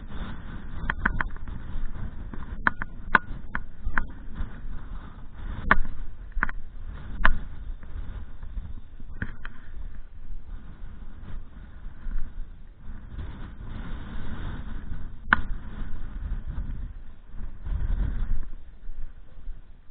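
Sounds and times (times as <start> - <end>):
wind buffeting microphone: 0.0 - 19.9
sharp clicks and knocks: 2.3 - 4.1, 5.6 - 6.6.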